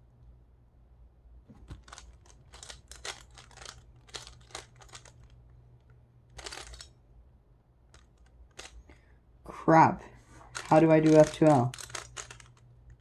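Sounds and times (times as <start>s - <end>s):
plastic cube turns clicking: 1.7s - 5.4s, 10.6s - 13.0s.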